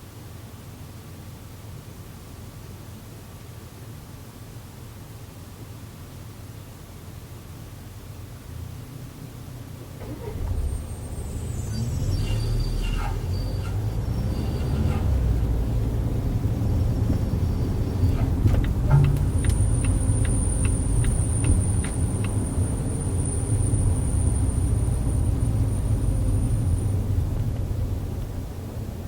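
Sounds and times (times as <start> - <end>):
road and drivetrain rumble: 0.0 - 29.0
sharp clicks: 18.5 - 22.4.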